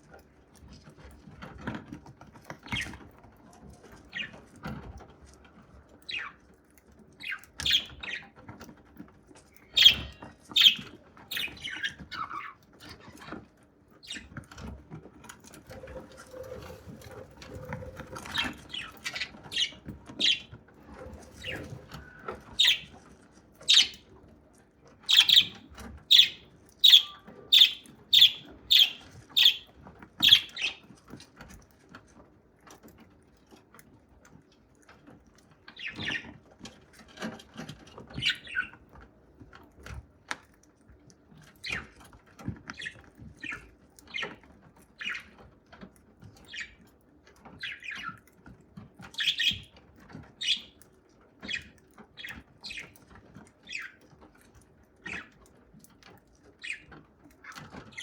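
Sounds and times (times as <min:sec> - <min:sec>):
bird pecking and cracking grains: 0:00.0 - 0:58.0.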